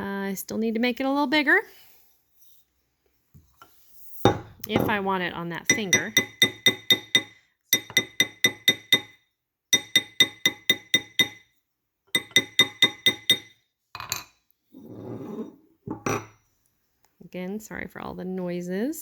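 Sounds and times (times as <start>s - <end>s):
hammer striking metal ring: 5.7s - 9.2s, 9.8s - 11.4s, 12.2s - 13.6s.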